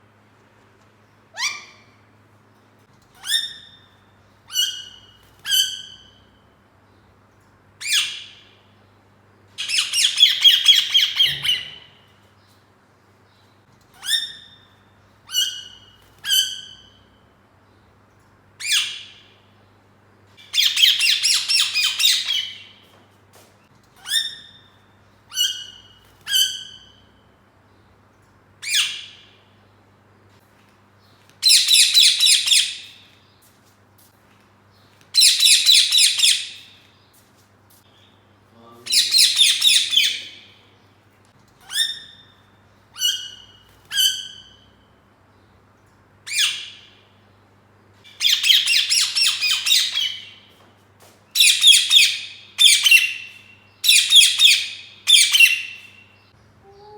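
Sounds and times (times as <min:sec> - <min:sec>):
parakeet squawking: 0:09.6 - 0:11.9, 0:38.9 - 0:40.5, 0:48.1 - 0:50.3, 0:51.4 - 0:55.8.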